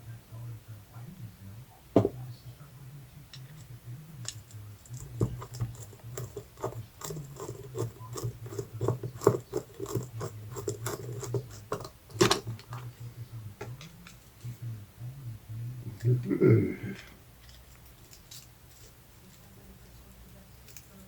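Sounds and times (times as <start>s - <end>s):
low steady hum: 0.0s - 21.0s
small tools clicking and scraping: 3.4s - 13.0s, 17.0s - 19.5s, 20.6s - 21.0s.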